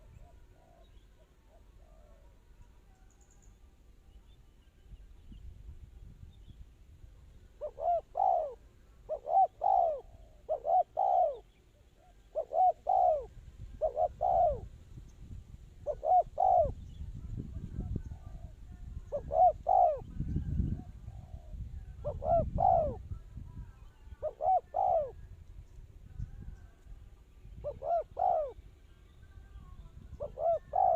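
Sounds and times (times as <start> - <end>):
dove cooing: 0.0 - 2.4, 7.4 - 14.8, 15.8 - 25.3, 27.5 - 28.6, 30.1 - 30.9.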